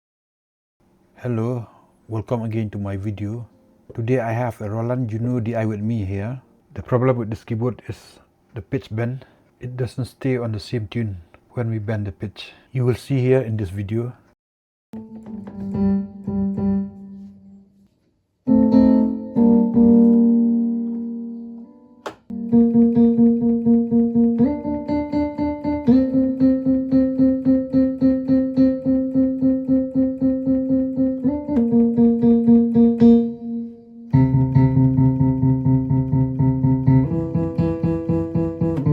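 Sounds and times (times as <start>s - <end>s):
synthesizer piano notes: 15.0s - 17.7s, 18.5s - 38.9s.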